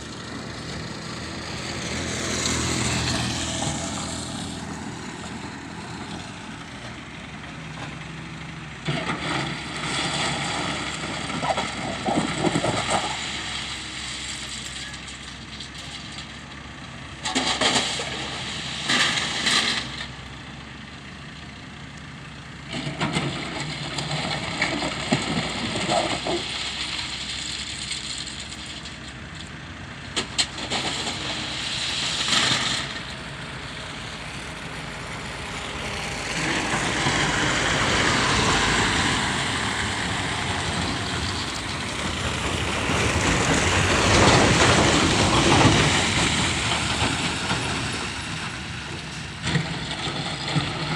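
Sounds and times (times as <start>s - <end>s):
excavator diesel engine running: 0.0s - 50.9s.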